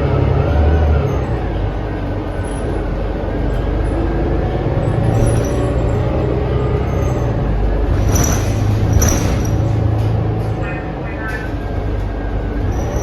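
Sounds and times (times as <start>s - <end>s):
bus engine drone: 0.0s - 13.0s
road noise: 0.0s - 13.0s
high-pitched squeaks: 4.9s - 7.4s.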